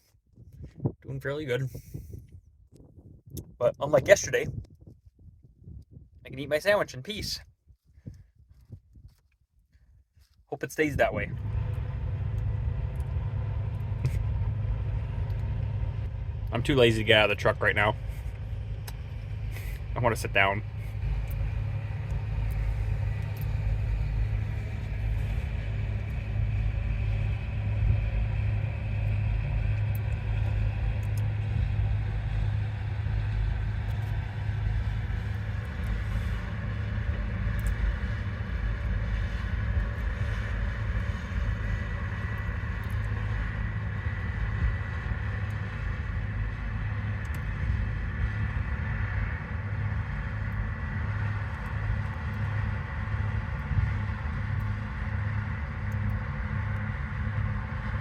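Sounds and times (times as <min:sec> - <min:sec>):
faint high hum: 0:10.5 - 0:58.0
truck engine idling: 0:10.8 - 0:58.0.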